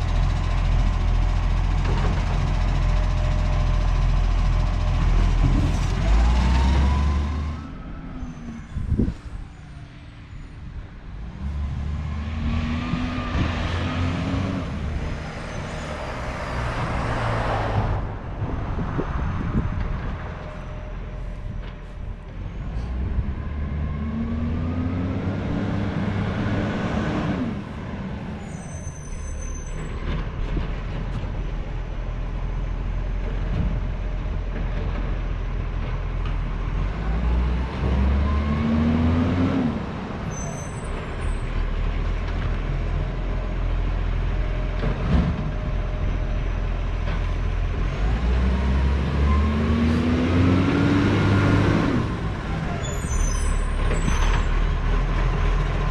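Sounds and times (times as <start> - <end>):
garbage truck engine revving: 47.7 - 55.9.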